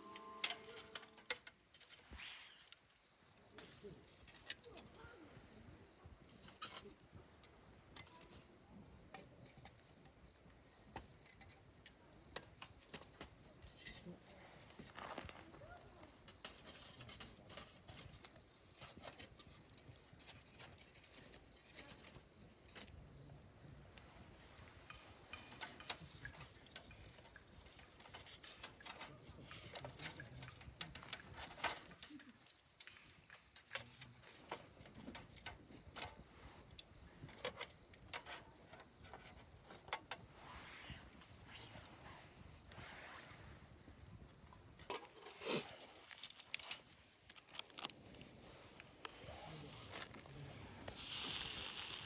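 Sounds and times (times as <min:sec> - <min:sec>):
small objects clicking and knocking: 0:00.0 - 0:02.1, 0:02.7 - 0:05.5, 0:06.1 - 0:40.3, 0:44.5 - 0:49.2, 0:50.8 - 0:52.0.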